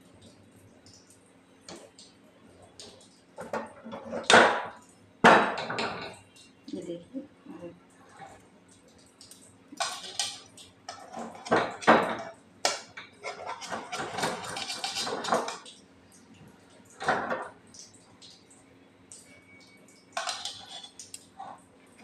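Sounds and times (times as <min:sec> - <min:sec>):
kitchen utensils clanking: 0:09.8 - 0:15.7, 0:20.2 - 0:21.1.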